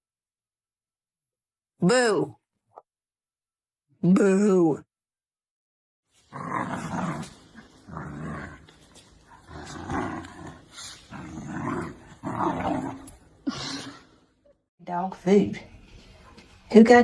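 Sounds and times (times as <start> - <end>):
dog growling: 6.2 - 14.4.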